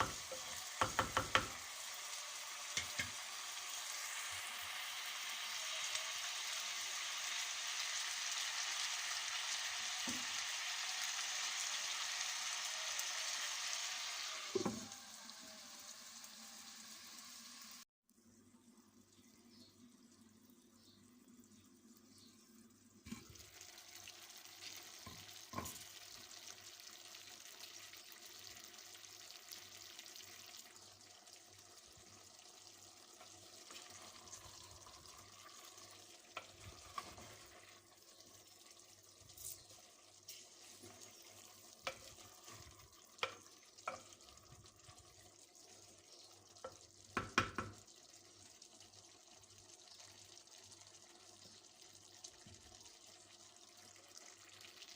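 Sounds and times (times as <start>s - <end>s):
utensil knocking against pan: 0.0s - 1.6s
food sizzling in a pan: 0.0s - 17.9s, 21.9s - 54.9s.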